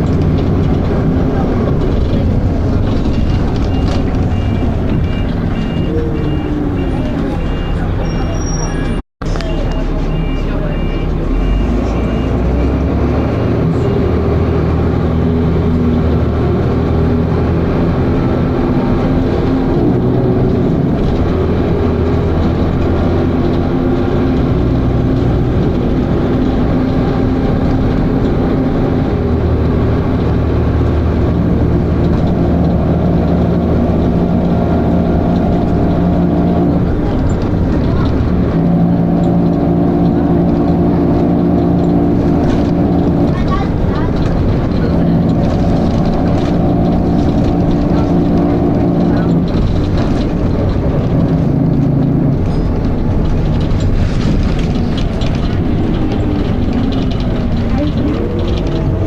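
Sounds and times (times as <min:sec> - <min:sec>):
bus diesel engine revving: 0:00.0 - 0:59.0
automatic gearbox shifting: 0:32.0 - 0:59.0.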